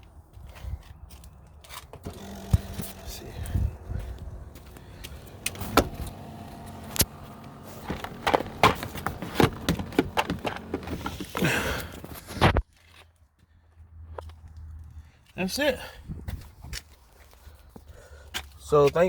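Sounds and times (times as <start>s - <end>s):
plastic parts clicking and knocking: 7.8s - 12.0s.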